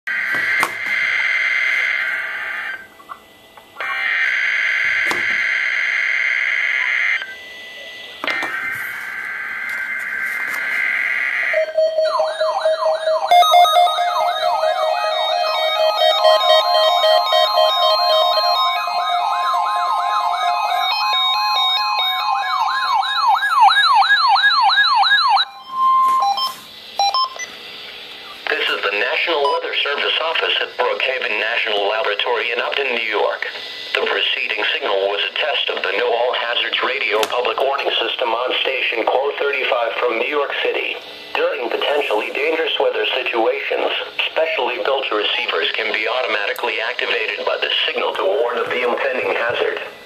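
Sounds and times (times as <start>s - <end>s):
electronic siren wailing: 0.1s - 2.9s, 3.8s - 27.6s
weather radio alarm tone: 0.1s - 2.9s, 3.8s - 27.6s, 28.3s - 50.0s
stepping electronic beeps: 25.2s - 27.6s.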